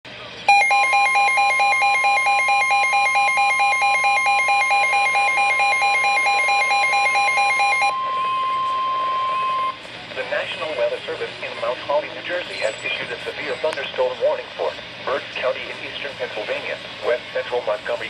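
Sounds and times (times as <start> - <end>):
rapid alternating electronic beeps: 0.5 - 7.9
steady single-pitch alarm tone: 0.5 - 9.8.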